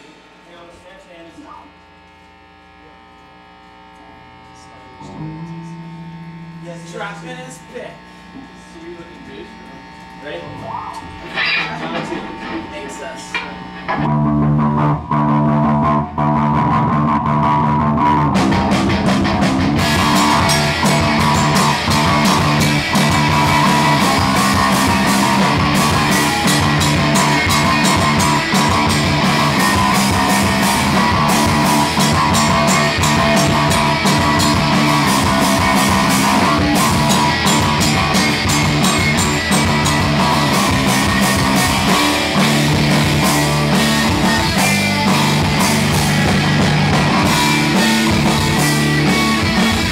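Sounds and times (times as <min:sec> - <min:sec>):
rock band playing: 0:10.4 - 0:49.9
drums and cymbals: 0:17.1 - 0:49.9.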